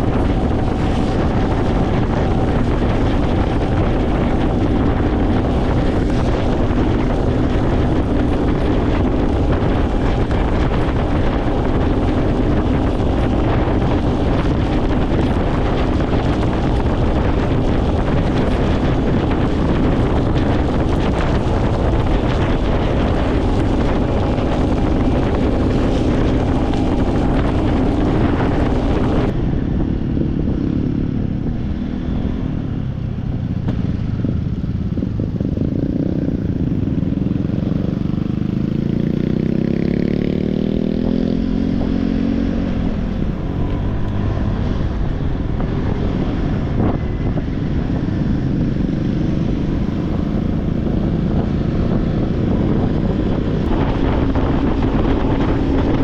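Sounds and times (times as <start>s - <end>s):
engine running: 0.0s - 56.0s
wind buffeting microphone: 0.0s - 56.0s.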